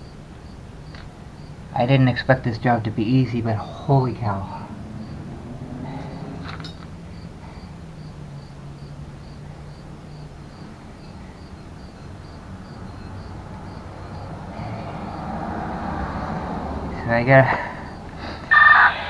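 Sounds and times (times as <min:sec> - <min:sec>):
cricket chirping: 0:00.0 - 0:19.0.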